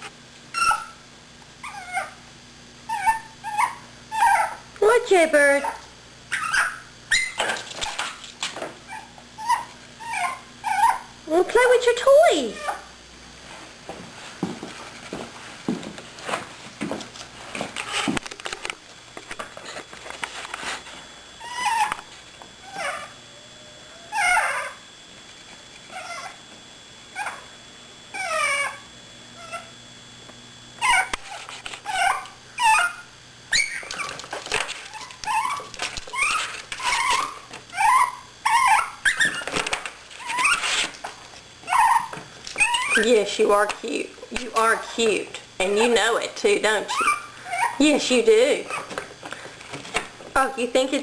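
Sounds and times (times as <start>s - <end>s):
puppy whining and squeaking: 0.5s - 1.0s, 1.6s - 2.2s, 2.9s - 11.1s, 12.3s - 12.9s, 21.4s - 24.8s, 25.9s - 26.4s, 27.1s - 27.5s, 28.1s - 29.7s, 30.8s - 40.9s, 41.6s - 43.3s, 46.9s - 48.0s, 48.7s - 49.0s.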